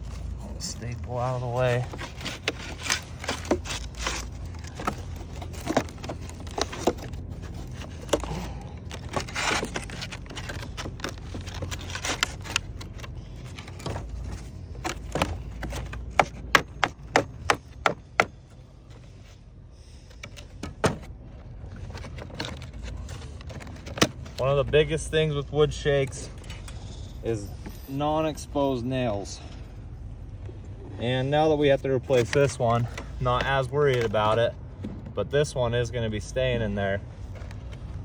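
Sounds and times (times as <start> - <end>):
hand tools tapping on wood: 14.9 - 18.4.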